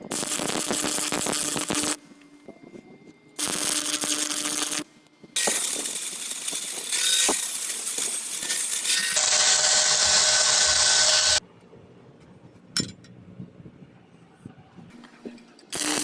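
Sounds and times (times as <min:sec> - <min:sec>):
power tool cutting steel: 0:00.0 - 0:02.0, 0:03.4 - 0:04.8, 0:05.4 - 0:11.4, 0:15.7 - 0:16.0.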